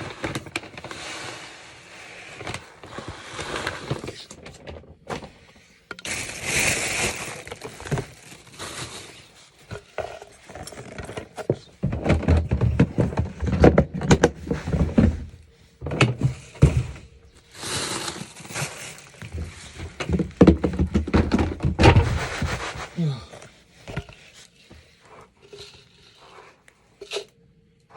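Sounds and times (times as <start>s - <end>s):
scoop scraping through cat litter: 0.0s - 4.3s, 5.6s - 11.4s, 16.2s - 20.4s, 21.8s - 23.0s
litter granules rushing: 6.0s - 9.4s, 17.5s - 20.0s.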